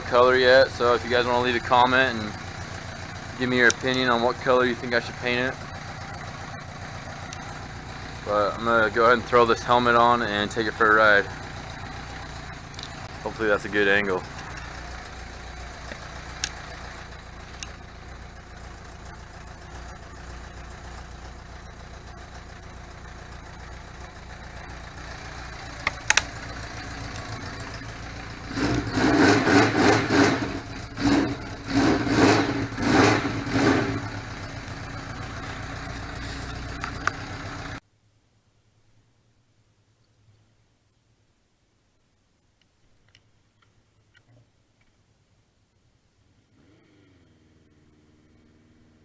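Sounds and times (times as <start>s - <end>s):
motorcycle engine idling: 0.0s - 37.8s
motorcycle engine revving: 0.0s - 37.8s, 46.4s - 49.0s
sharp clicks: 7.2s - 7.5s, 15.8s - 16.6s, 25.8s - 26.4s, 36.5s - 37.2s.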